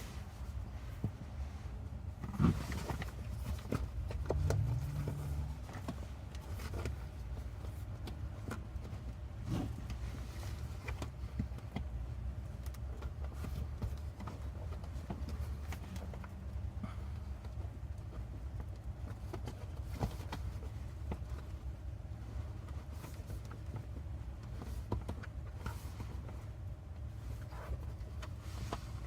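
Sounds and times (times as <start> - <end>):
low steady hum: 0.0 - 29.0.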